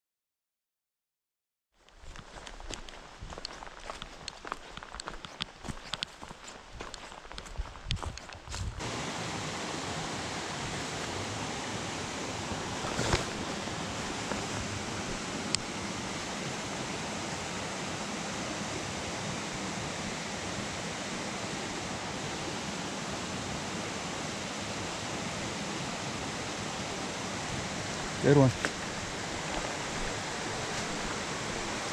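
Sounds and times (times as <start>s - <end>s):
creek water rushing: 8.8s - 31.9s.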